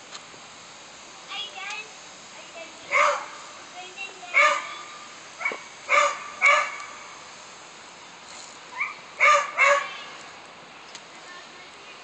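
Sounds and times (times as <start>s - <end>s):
dog barking: 2.9s - 3.4s, 4.3s - 4.7s, 5.4s - 6.8s, 8.8s - 10.0s
dog yipping: 4.4s - 4.7s, 5.4s - 6.8s, 8.7s - 10.0s.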